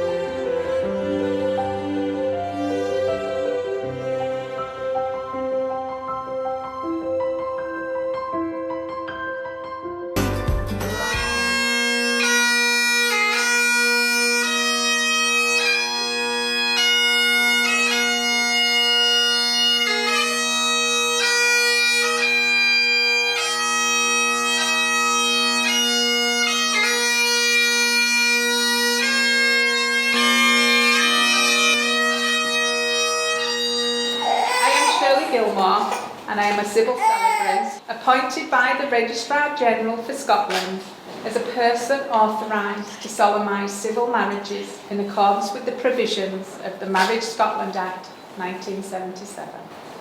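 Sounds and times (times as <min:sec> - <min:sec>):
bagpipes playing a melody: 0:00.0 - 0:04.8, 0:10.9 - 0:35.8
bagpipe drones: 0:00.0 - 0:05.0, 0:10.9 - 0:37.8.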